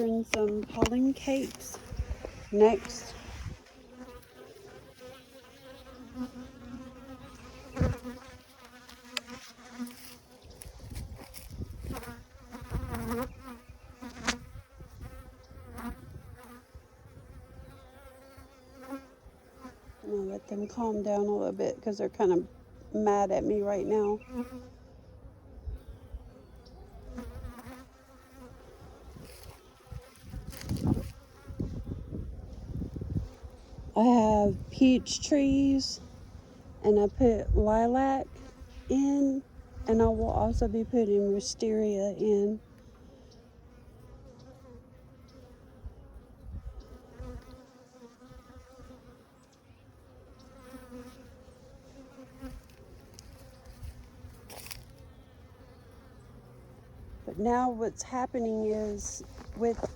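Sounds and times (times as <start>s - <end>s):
bee passing close: 0.0s - 59.9s
bees buzzing: 0.0s - 59.9s.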